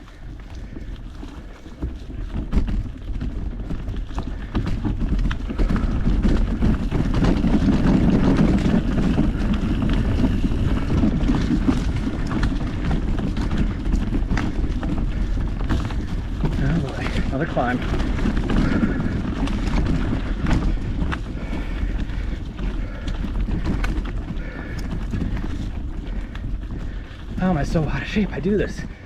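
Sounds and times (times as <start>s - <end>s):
bike tyres rattling over ground: 0.0s - 29.0s
wind buffeting microphone: 0.0s - 29.0s.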